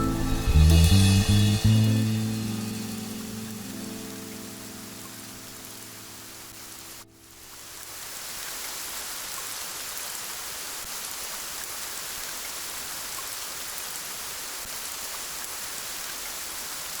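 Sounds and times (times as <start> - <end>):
music: 0.0 - 7.2
steady rain hiss: 0.0 - 17.0.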